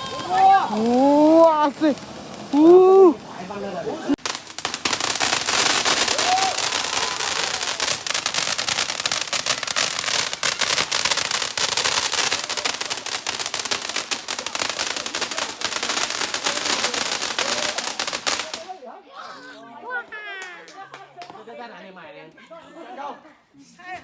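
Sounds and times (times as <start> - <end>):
fireworks crackling: 0.0 - 18.9.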